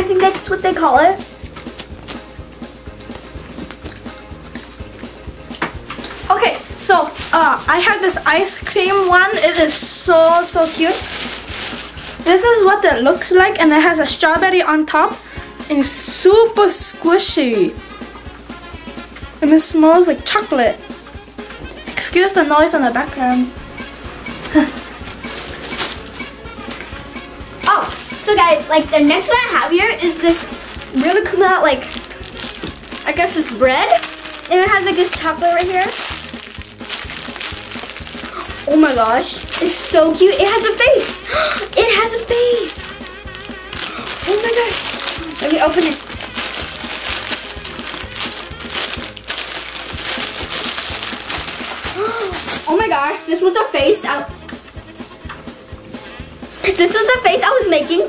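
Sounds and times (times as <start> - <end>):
plastic bag crinkling: 0.2 - 2.3, 2.9 - 13.3, 24.2 - 26.8, 27.6 - 53.0.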